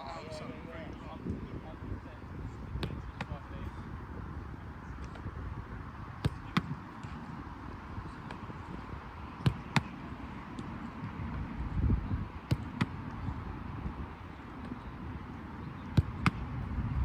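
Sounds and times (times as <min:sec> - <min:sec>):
steady low rumble: 0:16.4 - 0:17.0.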